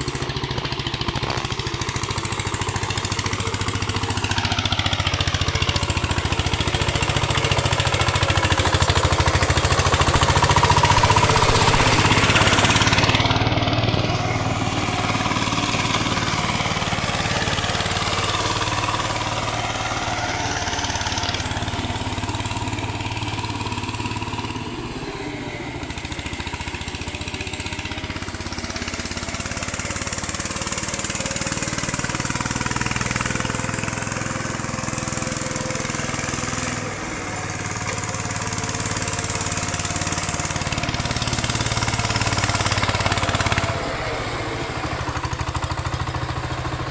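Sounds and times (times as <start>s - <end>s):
tiller engine chugging: 0.0s - 46.9s.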